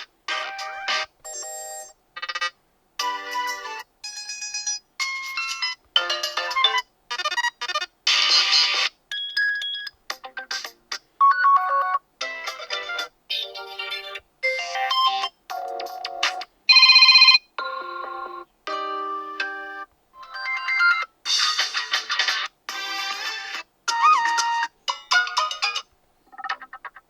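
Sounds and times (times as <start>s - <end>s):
phone ringtones and alert tones: 11.2s - 21.9s, 23.2s - 27.0s.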